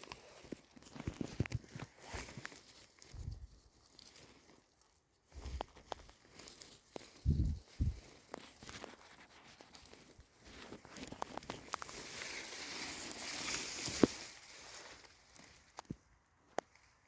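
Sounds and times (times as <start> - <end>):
rustling through undergrowth: 0.0 - 17.0.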